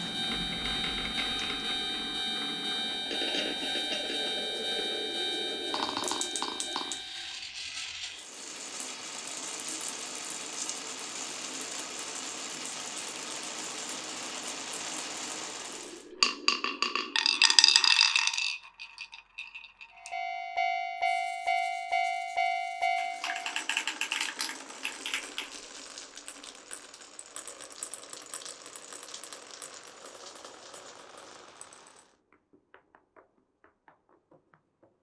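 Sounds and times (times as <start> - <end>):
railway crossing bell ringing: 0.0 - 7.6, 20.0 - 23.7
marble rolling on wooden track: 5.3 - 9.8, 13.5 - 20.1, 22.8 - 32.1
marbles clattering on wooden pieces: 5.7 - 7.0, 16.2 - 20.0, 22.9 - 32.1.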